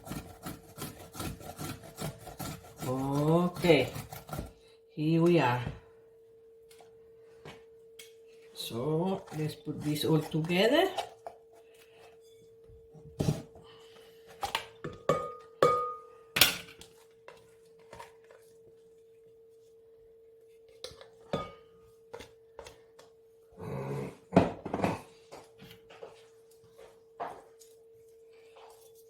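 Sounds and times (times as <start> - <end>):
faint steady hum: 3.9 - 29.0
utensils clinking on bowl: 20.8 - 21.9.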